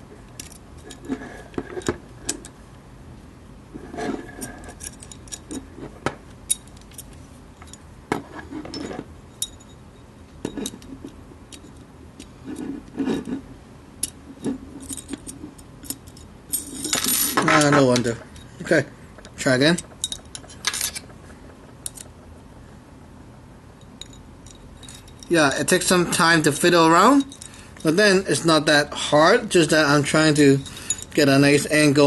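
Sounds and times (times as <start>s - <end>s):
metal parts scraping: 3.8s - 7.2s, 14.4s - 22.1s.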